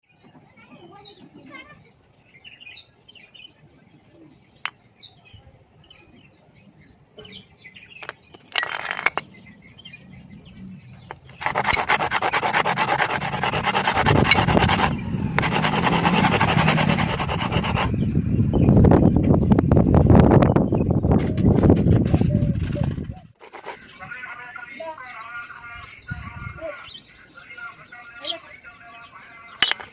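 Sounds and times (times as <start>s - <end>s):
brake lining rasping on abrasive: 11.2s - 18.0s.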